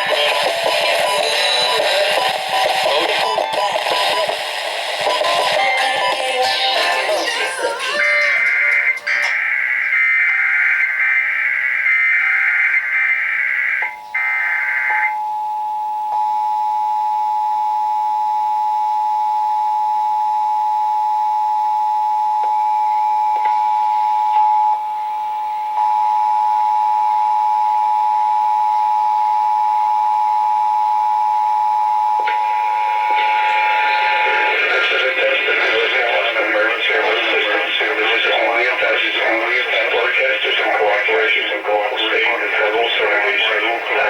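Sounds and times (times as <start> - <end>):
steady two-tone alert signal: 30.8 - 38.5.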